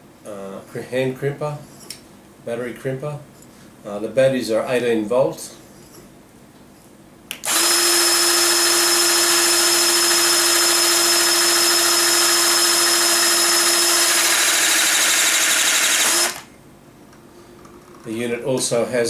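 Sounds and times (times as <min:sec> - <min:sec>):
electric pump motor whine: 0:07.4 - 0:16.5.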